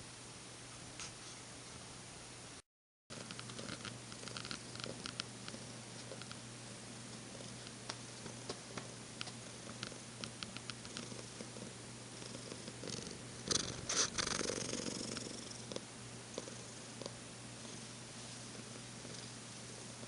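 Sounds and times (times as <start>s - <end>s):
cat purring: 3.1s - 6.4s, 7.1s - 8.6s, 9.2s - 20.0s.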